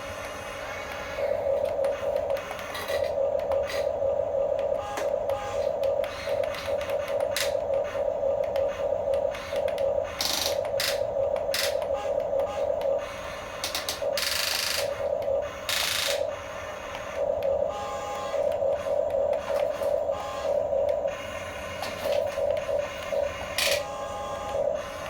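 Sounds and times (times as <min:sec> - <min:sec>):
small electric motors whining: 0:00.0 - 0:04.0, 0:04.7 - 0:25.0.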